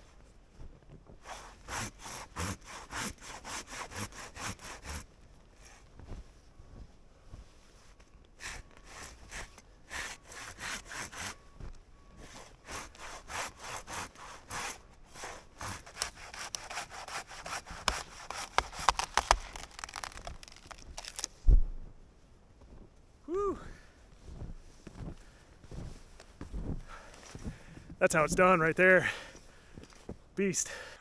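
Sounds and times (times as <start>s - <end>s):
saw cutting through log: 1.2s - 5.8s, 8.4s - 21.3s.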